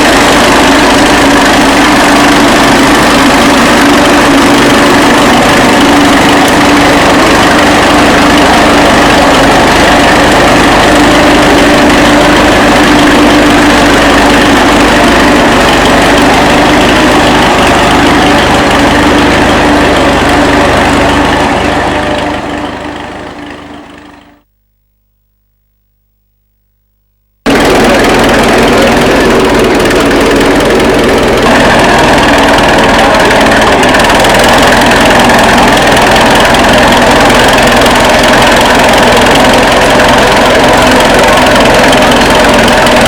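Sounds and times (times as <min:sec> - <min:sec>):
tractor engine running: 0:00.0 - 0:24.5, 0:27.4 - 0:43.0.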